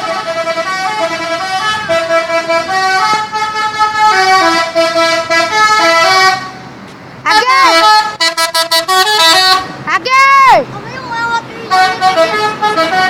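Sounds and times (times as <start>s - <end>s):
musical bus horn playing chords: 0.0s - 6.6s, 7.3s - 9.7s, 11.6s - 13.0s.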